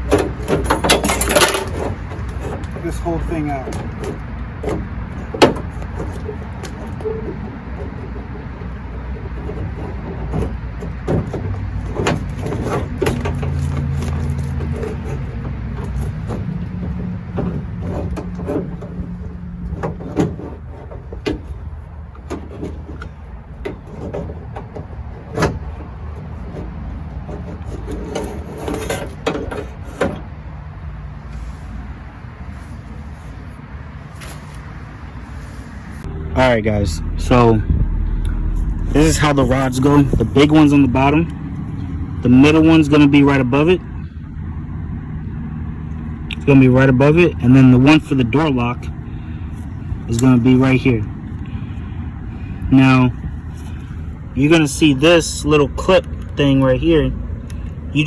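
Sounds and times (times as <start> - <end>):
metal latch clicks and rattles: 0.0 - 2.0
metal knocks and clunks: 0.0 - 30.4
low hum: 35.0 - 42.4
low rumble: 35.4 - 42.4.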